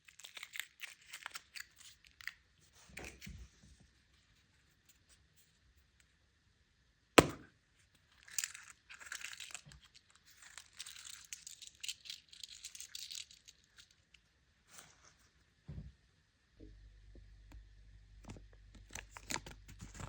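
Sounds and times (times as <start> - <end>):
plastic and foil wrapping tearing: 0.0 - 2.4, 8.2 - 13.9.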